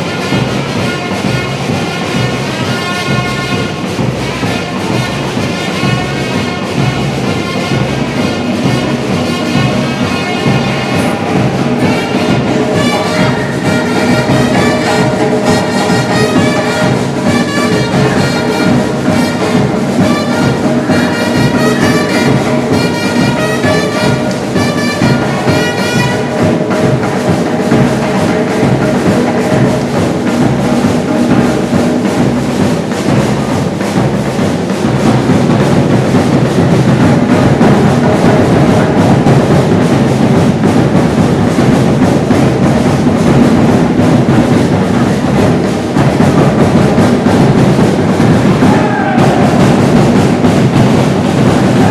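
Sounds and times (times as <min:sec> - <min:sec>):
samba drumming: 0:00.0 - 0:51.9
pitched melody line: 0:07.6 - 0:27.0.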